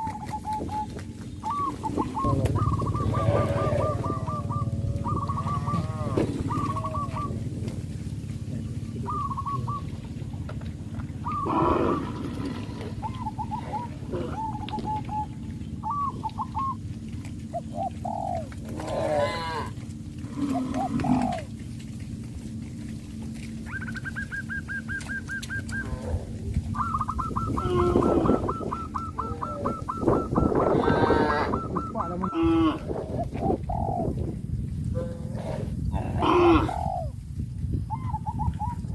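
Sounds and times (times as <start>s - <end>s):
birds chirping: 0.0s - 37.2s
steady low hum: 0.0s - 38.9s
louder animal calls: 1.4s - 7.5s, 11.2s - 16.8s, 23.7s - 34.1s, 35.0s - 37.2s.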